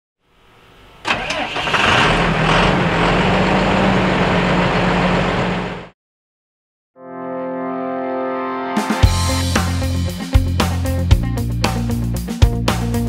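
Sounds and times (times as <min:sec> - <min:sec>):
diesel truck engine starting: 0:00.7 - 0:05.9
diesel engine idling: 0:01.0 - 0:05.9.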